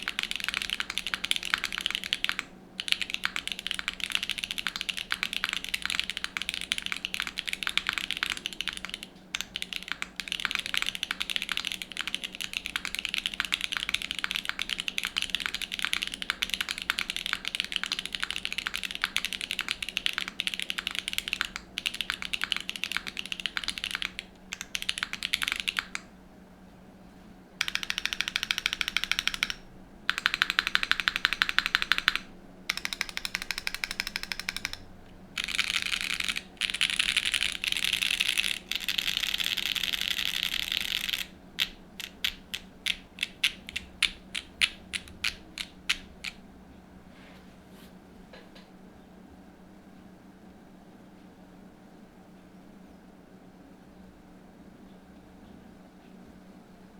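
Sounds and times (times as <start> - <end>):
mechanical keyboard typing: 0.0 - 26.1, 27.6 - 46.4.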